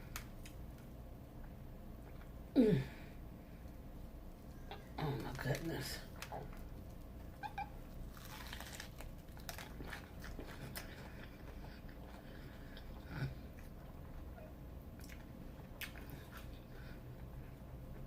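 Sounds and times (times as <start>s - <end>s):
chewing: 6.1s - 18.0s
crunching fried shrimp: 7.9s - 14.3s.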